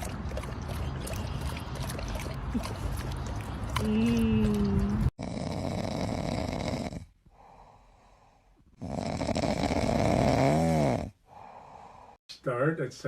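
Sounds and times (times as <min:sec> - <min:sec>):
loud snore: 0:05.2 - 0:07.6, 0:08.7 - 0:12.2.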